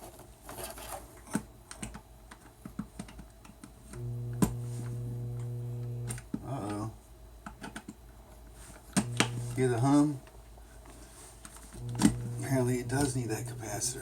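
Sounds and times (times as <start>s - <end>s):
stalled fan motor humming: 3.9s - 6.7s, 8.9s - 10.2s, 11.7s - 14.0s.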